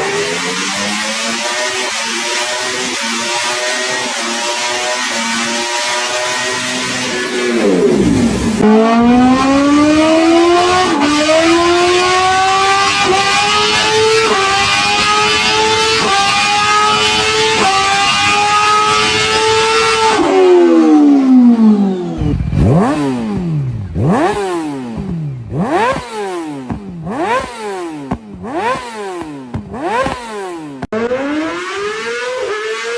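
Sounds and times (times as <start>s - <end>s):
motorcycle engine accelerating: 0.0s - 32.9s
motorcycle engine revving: 0.0s - 32.9s.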